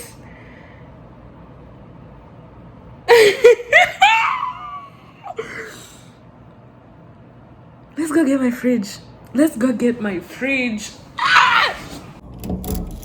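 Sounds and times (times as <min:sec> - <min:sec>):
woman squealing with excitement: 0:03.7 - 0:05.0, 0:11.2 - 0:12.0.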